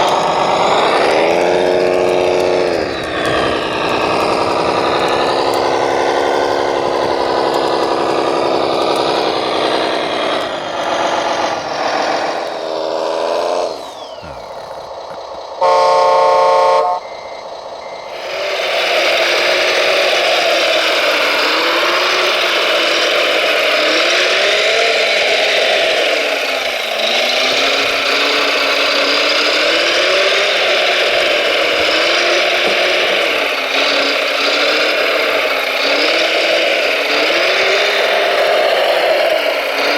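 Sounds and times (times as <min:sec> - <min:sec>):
model truck motors running: 0:00.0 - 0:39.9
horn blast: 0:13.8 - 0:17.2.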